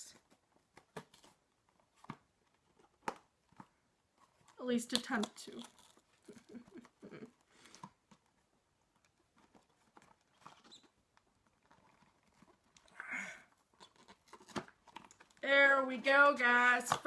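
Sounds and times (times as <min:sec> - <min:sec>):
cardboard tearing: 0:13.7 - 0:15.4.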